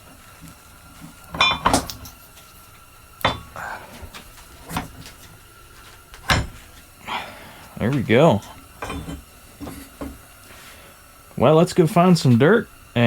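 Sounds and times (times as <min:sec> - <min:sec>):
metal bit clanking: 0:01.3 - 0:02.1, 0:06.2 - 0:06.7, 0:07.9 - 0:10.2.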